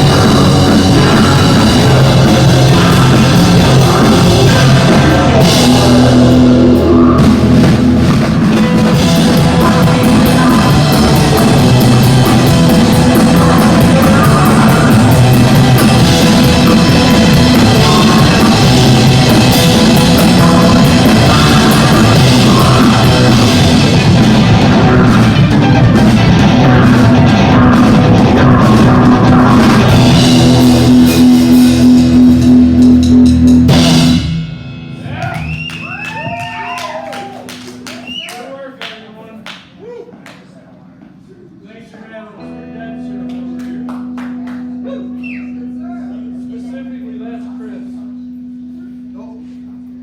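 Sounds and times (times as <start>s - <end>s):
live rock band: 0.0s - 39.0s, 42.4s - 46.5s
drum kit: 0.0s - 39.8s.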